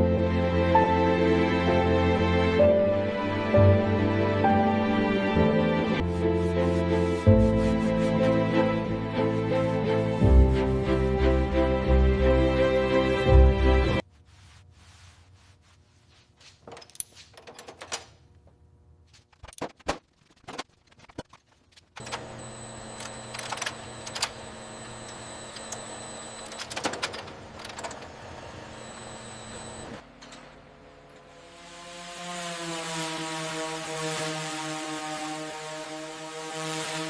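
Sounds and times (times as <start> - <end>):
music: 0.0 - 14.0
machine hum with high tones: 22.0 - 37.0.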